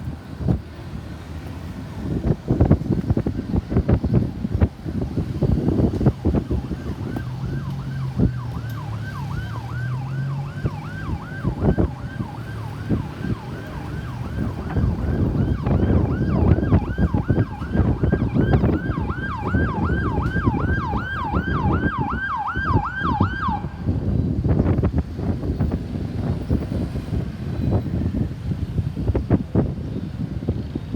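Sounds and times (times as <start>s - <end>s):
road traffic rumble: 0.0s - 30.9s
ambulance siren yelping: 4.9s - 24.1s.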